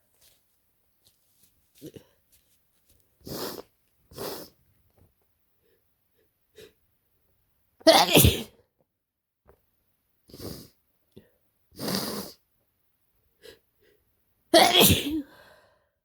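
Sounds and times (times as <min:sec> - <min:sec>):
person sneezing: 0:03.2 - 0:04.6, 0:07.9 - 0:08.5, 0:14.6 - 0:15.3.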